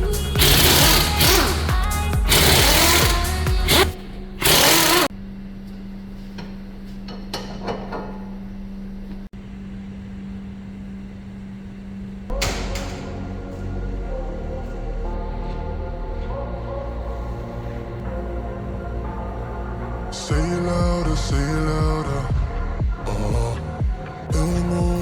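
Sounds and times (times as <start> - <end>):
steady low hum: 0.0 - 25.0
power tool running in bursts: 0.1 - 5.1.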